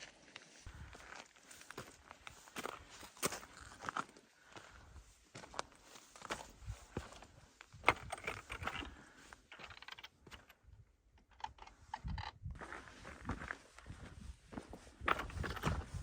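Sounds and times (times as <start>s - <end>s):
boots crunching on rocky trail: 0.0s - 8.1s, 12.6s - 16.0s.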